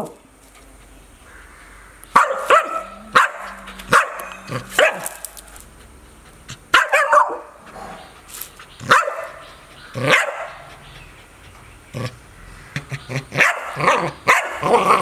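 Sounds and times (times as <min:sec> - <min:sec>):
dog barking: 0:02.2 - 0:05.2, 0:06.7 - 0:07.6, 0:08.8 - 0:10.7, 0:13.4 - 0:15.0.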